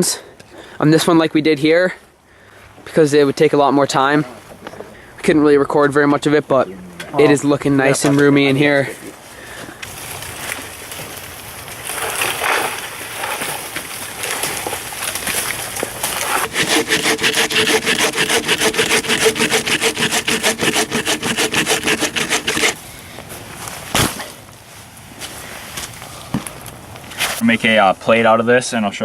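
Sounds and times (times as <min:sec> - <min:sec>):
rubbing and scraping: 0:16.1 - 0:22.8
hand saw cutting wood: 0:16.2 - 0:22.8.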